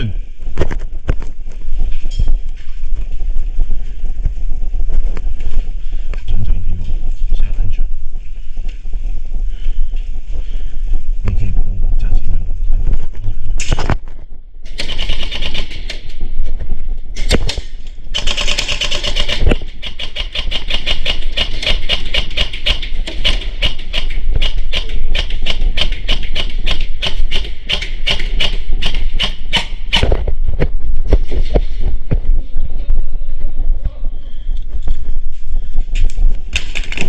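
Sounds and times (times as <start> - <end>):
low rumble: 0.0 - 18.3, 30.0 - 37.0
airsoft guns firing: 14.6 - 16.1, 17.2 - 30.2.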